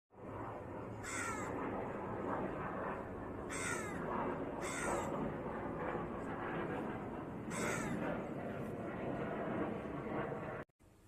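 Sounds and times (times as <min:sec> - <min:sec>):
crow cawing: 0:01.0 - 0:01.6, 0:03.5 - 0:05.2, 0:07.5 - 0:08.0.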